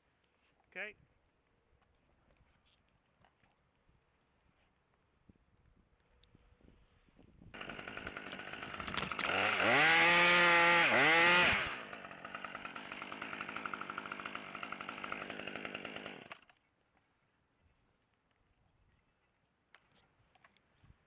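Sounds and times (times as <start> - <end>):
chainsaw revving and idling: 7.6 - 16.5.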